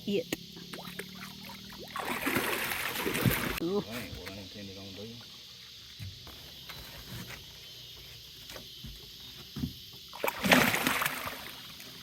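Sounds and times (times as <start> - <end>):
loud water splash: 1.0 - 3.6, 10.2 - 11.6.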